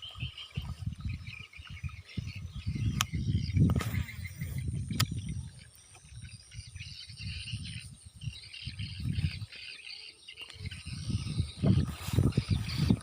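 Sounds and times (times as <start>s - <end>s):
outdoor rustling: 8.3s - 13.0s.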